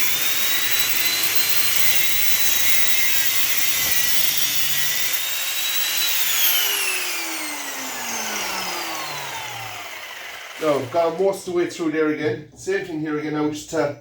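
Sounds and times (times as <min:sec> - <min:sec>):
motor winding down: 0:00.0 - 0:11.2
angle grinder cutting metal: 0:00.0 - 0:11.3.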